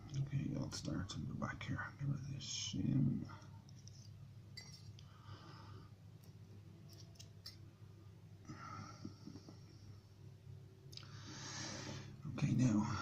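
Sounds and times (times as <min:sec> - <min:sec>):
low background hum: 0:00.0 - 0:13.0
soft breathing: 0:05.0 - 0:06.1, 0:08.4 - 0:10.2, 0:11.0 - 0:12.2.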